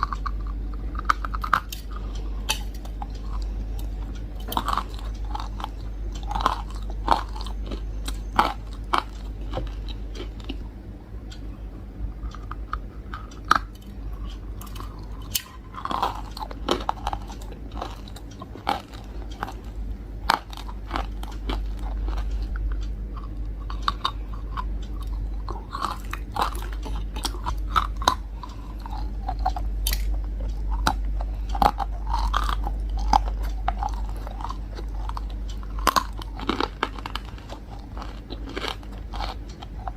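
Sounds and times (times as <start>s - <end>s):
person chewing crunchy food: 0.0s - 39.9s
steady low hum: 0.0s - 39.9s.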